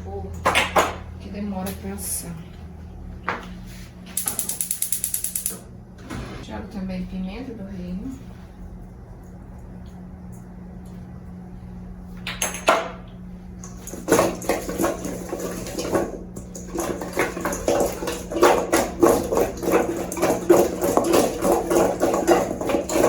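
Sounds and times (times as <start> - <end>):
steady low hum: 0.0 - 23.0
bowl clattering and scraping: 13.7 - 23.0.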